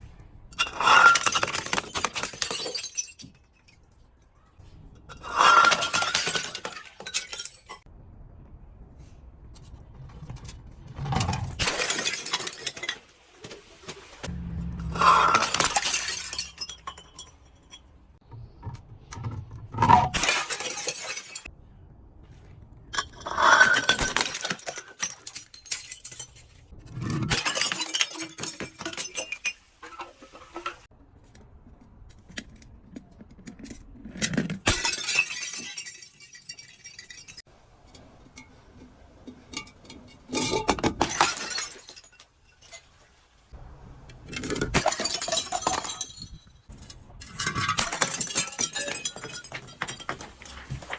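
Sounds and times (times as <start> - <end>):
glass bottles shattering: 0.5 - 4.0, 5.1 - 7.9, 11.1 - 13.1, 14.8 - 18.2, 19.8 - 21.5, 23.0 - 30.9, 34.2 - 37.5, 39.6 - 42.9, 44.3 - 50.9
glass shards clinking: 0.6 - 4.0, 5.1 - 7.8, 11.6 - 13.0, 14.9 - 18.0, 19.9 - 21.5, 23.0 - 30.8, 34.7 - 37.4, 39.5 - 42.9, 44.3 - 46.6, 47.2 - 50.9.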